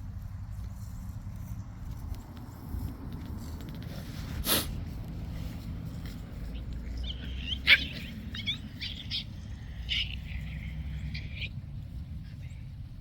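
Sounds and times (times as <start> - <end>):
puppies yipping and whining: 6.0 - 11.6.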